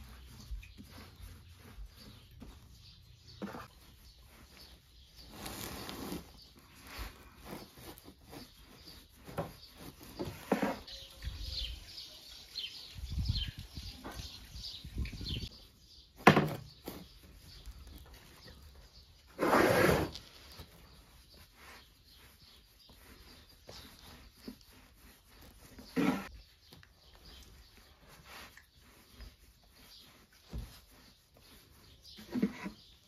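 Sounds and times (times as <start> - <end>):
faint bird chirps: 8.3 - 19.3.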